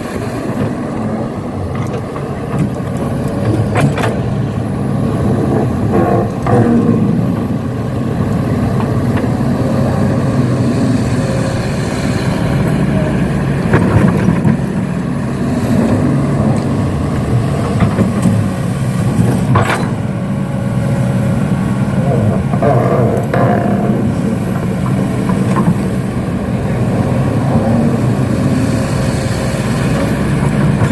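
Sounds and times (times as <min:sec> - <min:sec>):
heavy vehicle engine running: 0:00.0 - 0:30.9.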